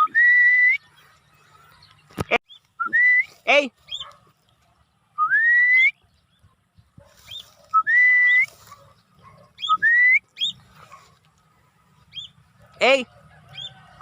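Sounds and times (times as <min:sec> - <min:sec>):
bird chirps: 0:00.0 - 0:12.6, 0:13.5 - 0:14.0
person whistling rising whistles: 0:05.2 - 0:05.9, 0:07.7 - 0:08.5.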